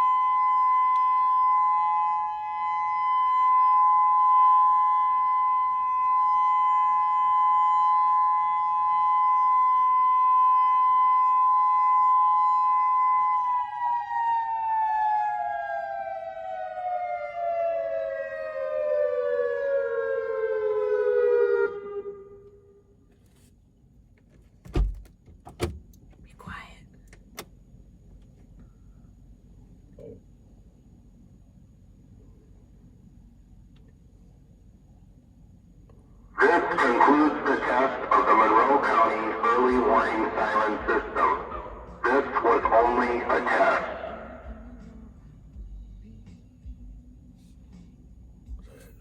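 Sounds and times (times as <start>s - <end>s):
electronic warning siren: 0.0s - 22.8s, 36.4s - 44.8s.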